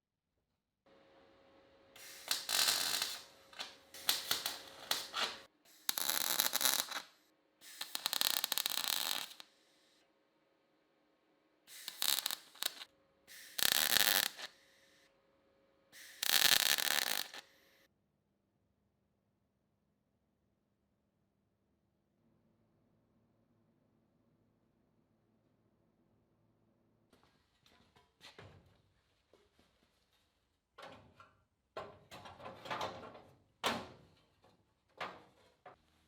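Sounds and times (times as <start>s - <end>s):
welder crackling: 2.0s - 9.5s, 11.7s - 14.7s, 16.0s - 17.6s.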